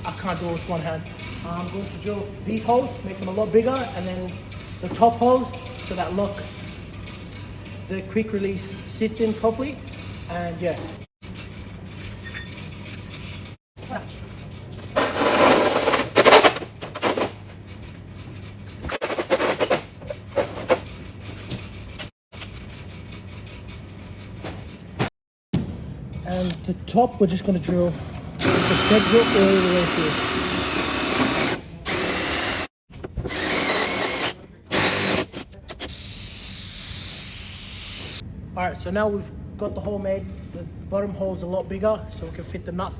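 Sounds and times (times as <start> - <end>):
power drill cutting into bonnet: 28.1 - 38.2.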